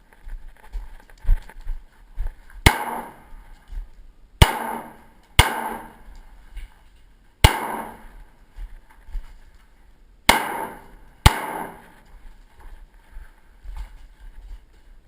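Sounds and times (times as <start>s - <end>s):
pistol shots: 2.6s - 3.3s, 4.4s - 6.1s, 7.4s - 8.2s, 10.3s - 12.0s.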